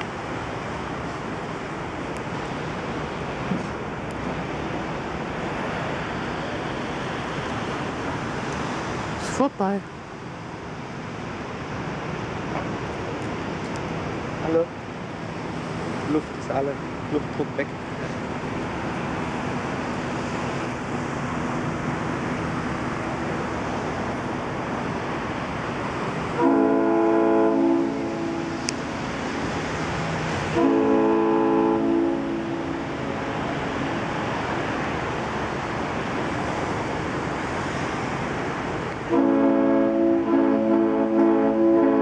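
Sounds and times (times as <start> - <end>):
ship's horn long blasts: 26.2 - 29.5, 30.3 - 33.0, 39.0 - 42.0
yacht horns din: 26.4 - 28.8, 30.5 - 32.9, 39.1 - 42.0.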